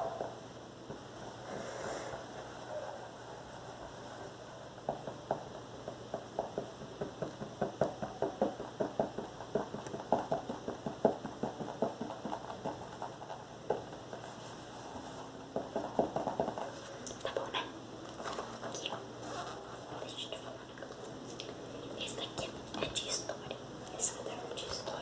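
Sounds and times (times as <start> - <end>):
fingers tapping on a book: 4.8 - 14.2, 15.5 - 17.2.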